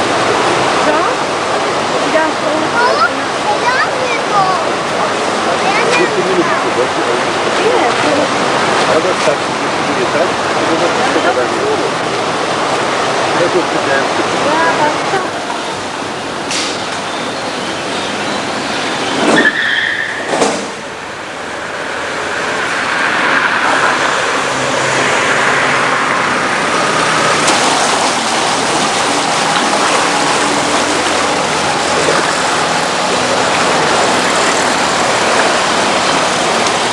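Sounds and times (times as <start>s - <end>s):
loud steady rushing noise: 0.0s - 36.9s
motor vehicle running: 20.1s - 36.9s.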